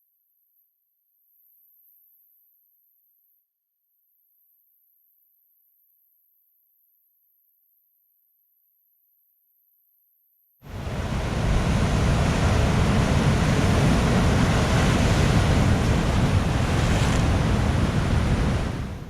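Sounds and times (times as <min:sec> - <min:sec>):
ocean waves breaking on shore: 0:10.6 - 0:19.0
wind buffeting microphone: 0:10.7 - 0:19.0.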